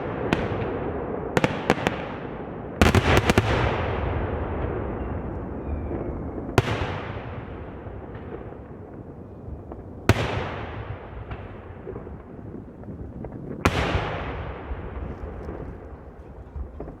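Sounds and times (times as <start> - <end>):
firework bangs: 0.0 - 17.0
echo rumble: 3.0 - 17.0
faint crackles: 4.4 - 17.0.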